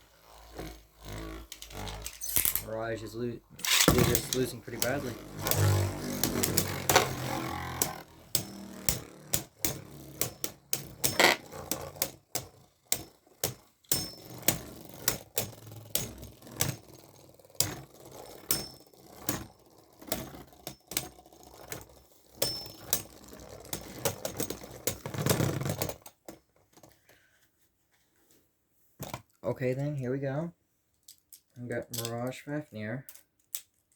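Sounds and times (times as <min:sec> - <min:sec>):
spinning tops scraping: 0:00.0 - 0:20.4
spinning tops clacking: 0:01.4 - 0:02.9, 0:03.6 - 0:12.1.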